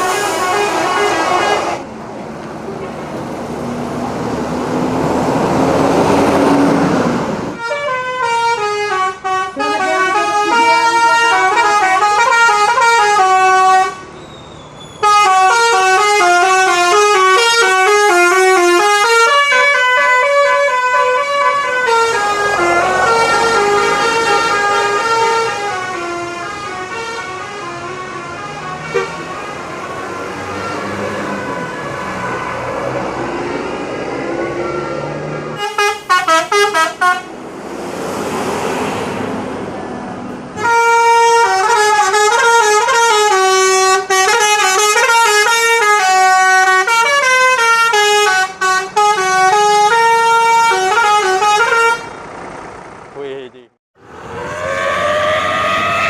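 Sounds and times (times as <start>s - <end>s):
multi-tone bus horns melody: 0.0s - 1.9s, 5.5s - 14.2s, 15.0s - 37.4s, 40.5s - 52.4s, 54.3s - 56.0s
loud noisy rush: 21.8s - 26.0s.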